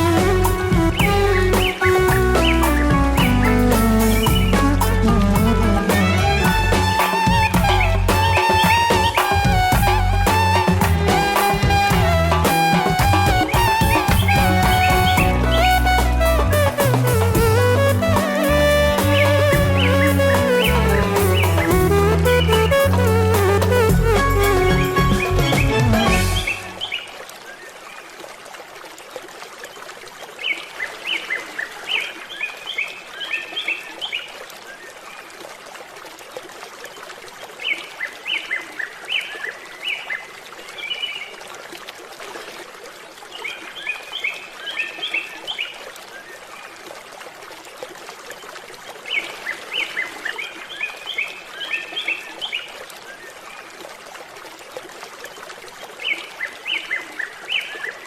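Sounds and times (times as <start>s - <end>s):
songbird chirping: 0.0s - 10.6s, 12.7s - 27.6s
running water: 0.0s - 58.0s.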